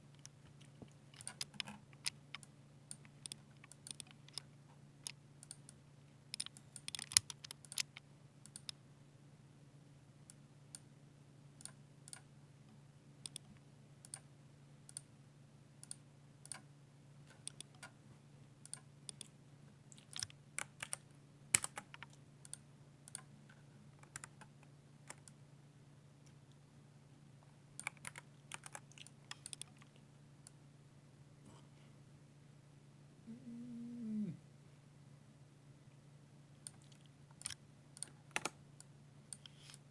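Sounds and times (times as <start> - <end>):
faint low hum: 0.0 - 39.9.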